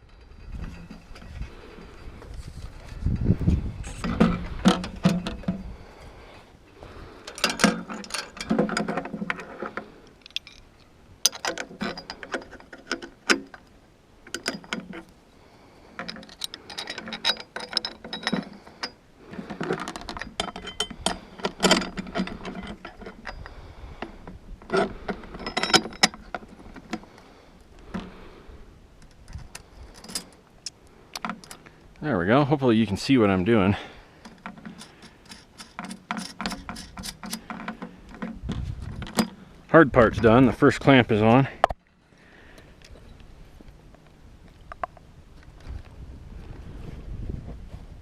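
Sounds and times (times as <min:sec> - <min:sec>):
metal clamp clinking and rattling: 0:00.0 - 0:05.7, 0:07.2 - 0:13.7, 0:14.3 - 0:15.1, 0:16.0 - 0:27.2, 0:29.0 - 0:30.4, 0:31.2 - 0:31.7, 0:34.1 - 0:39.5.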